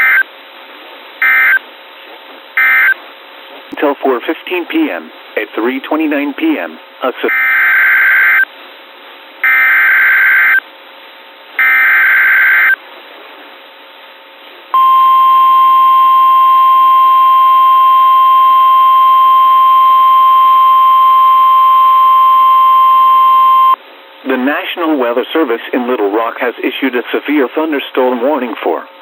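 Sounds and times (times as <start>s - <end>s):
steady warning alarm tone: 1.2s - 1.6s, 2.6s - 3.0s, 9.4s - 10.6s, 11.6s - 12.8s, 14.8s - 23.8s.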